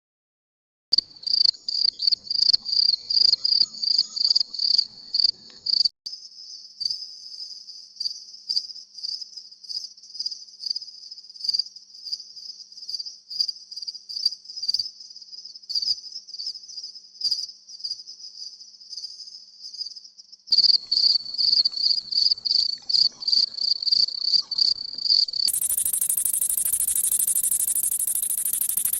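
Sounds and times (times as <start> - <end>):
crickets chirping: 20.5 - 28.9.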